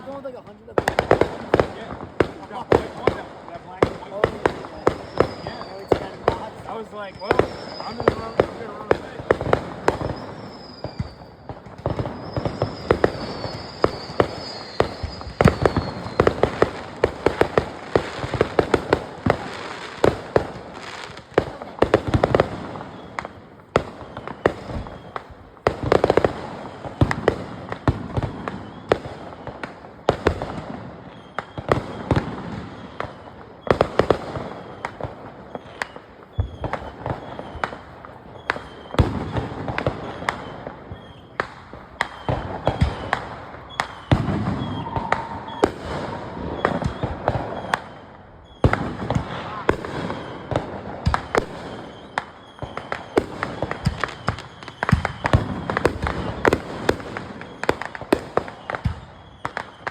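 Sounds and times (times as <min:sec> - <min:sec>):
falling firework whistle: 0:00.0 - 0:59.9
fireworks cracking and banging: 0:00.0 - 0:59.9.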